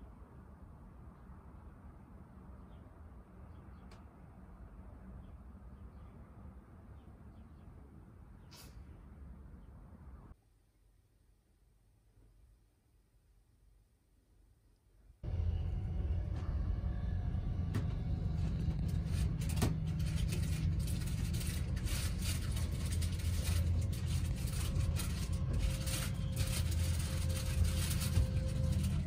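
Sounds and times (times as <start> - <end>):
low vehicle rumble: 15.2 - 29.0.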